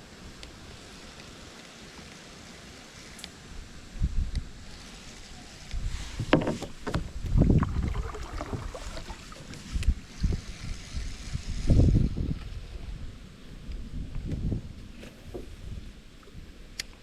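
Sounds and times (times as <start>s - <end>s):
water sloshing: 6.4s - 10.0s.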